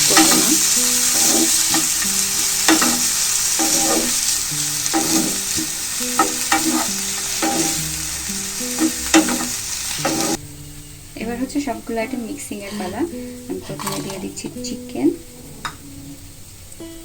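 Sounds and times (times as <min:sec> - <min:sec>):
utensil scraping a pan: 0:00.0 - 0:10.4
vegetables sizzling in a frying pan: 0:00.0 - 0:17.0.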